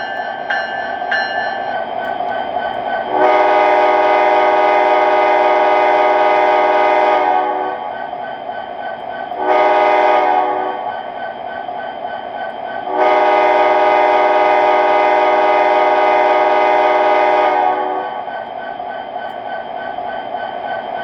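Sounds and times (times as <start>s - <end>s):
locomotive bell ringing: 0.0s - 2.2s
locomotive horn blast: 3.1s - 7.7s, 9.4s - 10.8s, 12.9s - 18.1s.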